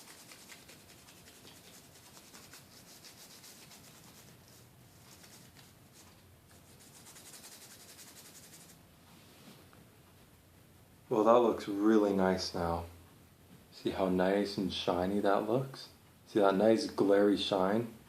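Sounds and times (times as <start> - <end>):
brush scrubbing circuit board: 0.0 - 8.8.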